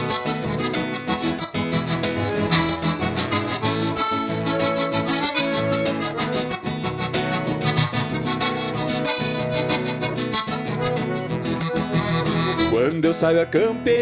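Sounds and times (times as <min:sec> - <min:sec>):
live band playing: 0:00.0 - 0:13.1
accordion: 0:00.0 - 0:14.0.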